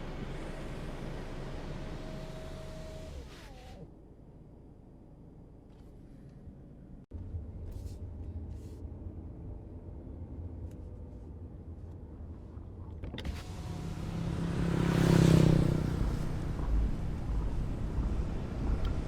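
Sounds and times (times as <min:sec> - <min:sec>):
muffled traffic rumble: 0:03.9 - 0:19.0
vehicle passing: 0:13.7 - 0:19.0.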